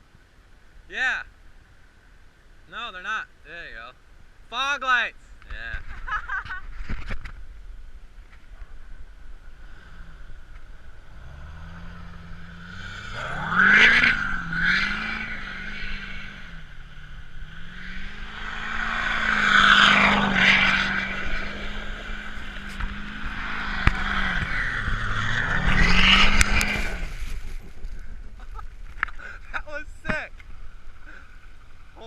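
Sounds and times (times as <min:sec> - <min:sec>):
diesel truck engine revving hard: 0:11.1 - 0:16.5.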